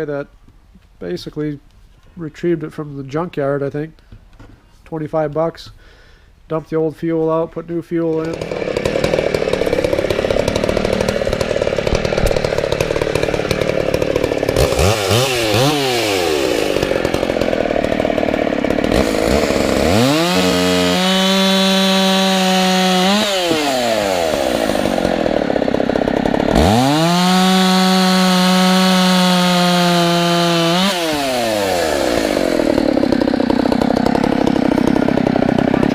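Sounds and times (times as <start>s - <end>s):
chainsaw idling and revving: 8.0s - 35.9s.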